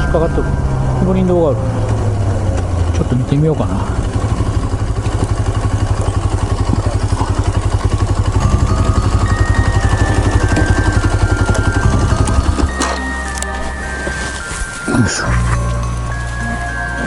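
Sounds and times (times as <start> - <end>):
motorcycle engine running: 0.0 - 17.0
background music: 7.8 - 17.0.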